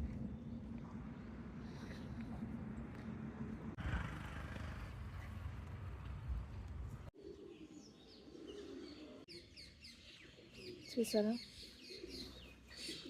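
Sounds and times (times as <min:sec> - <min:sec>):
doves cooing: 0:07.2 - 0:09.2, 0:10.3 - 0:13.0
birds chirping: 0:07.2 - 0:13.0.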